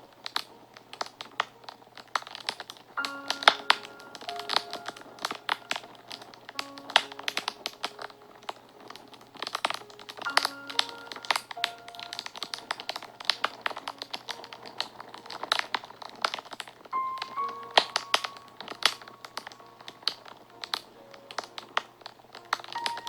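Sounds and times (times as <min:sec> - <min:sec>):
soft background music: 0:00.0 - 0:23.0
wood fire crackling and popping: 0:00.0 - 0:23.0.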